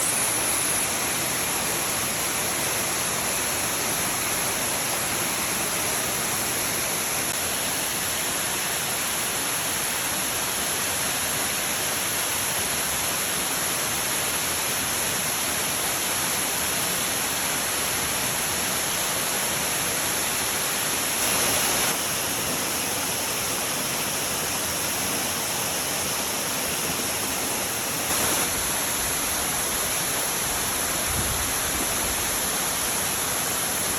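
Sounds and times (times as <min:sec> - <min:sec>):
waterfall rushing: 0:17.3 - 0:33.9.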